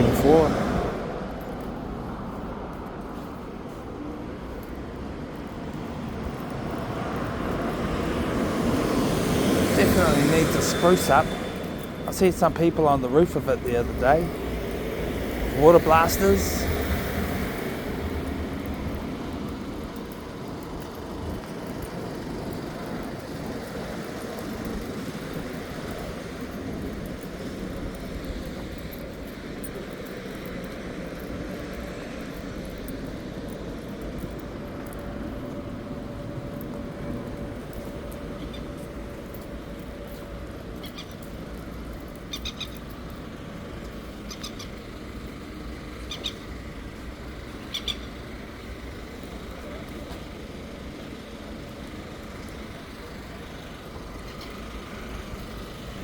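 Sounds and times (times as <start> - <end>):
traffic rumble: 0.0 - 56.0
bird chirping: 44.2 - 44.8, 46.0 - 46.5, 47.6 - 48.2.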